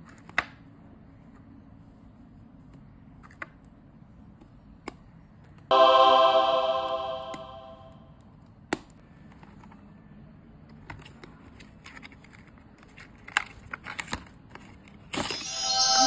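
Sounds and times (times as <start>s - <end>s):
ringing musical tone: 5.7s - 8.0s, 15.3s - 16.0s.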